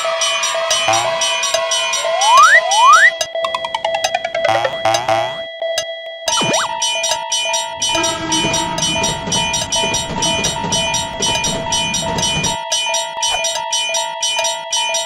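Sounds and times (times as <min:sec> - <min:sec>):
railroad crossing warning bell: 0:00.0 - 0:15.0
train rumbling past: 0:07.7 - 0:12.6.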